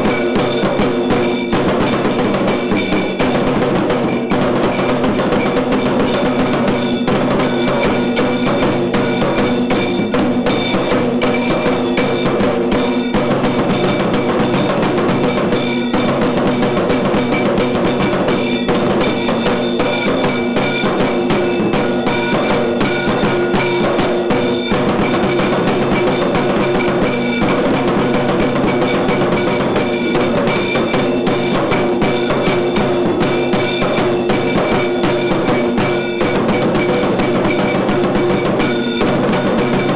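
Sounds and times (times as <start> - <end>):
dense steady drumming: 0.0 - 39.9.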